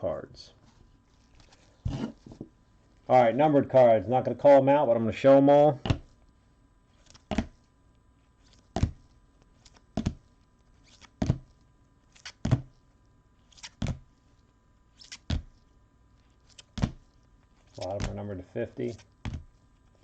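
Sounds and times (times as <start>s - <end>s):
light rustle of card: 0.6s - 3.0s.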